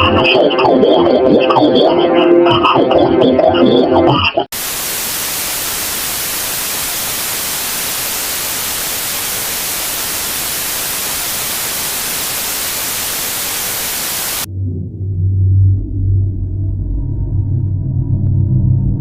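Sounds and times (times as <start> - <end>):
loud static hiss: 4.4 - 14.5
deep low tone: 14.5 - 19.0.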